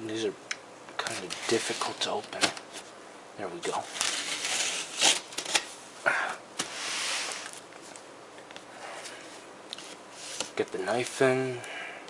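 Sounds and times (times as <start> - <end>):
cardboard scraping slide: 3.9 - 5.2, 6.6 - 7.6.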